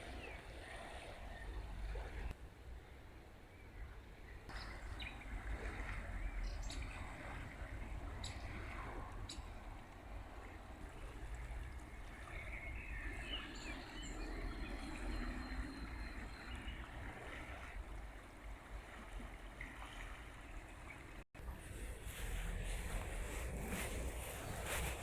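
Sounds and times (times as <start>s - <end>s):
faint birds chirping: 0.0s - 17.9s
river water flowing: 4.5s - 25.0s.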